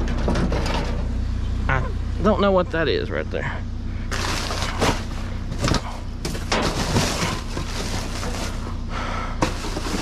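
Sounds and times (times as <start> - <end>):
steady low hum: 0.0 - 10.0
rustling through boxes and items: 4.1 - 10.0.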